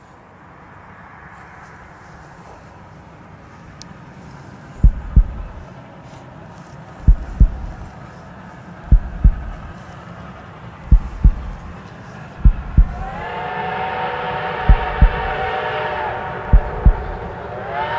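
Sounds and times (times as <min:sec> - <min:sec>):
steady low rumble: 0:01.5 - 0:13.4, 0:14.6 - 0:17.6
locomotive air pump thumping: 0:04.8 - 0:08.1, 0:08.8 - 0:10.0, 0:10.8 - 0:13.2, 0:14.6 - 0:15.5, 0:16.4 - 0:17.3.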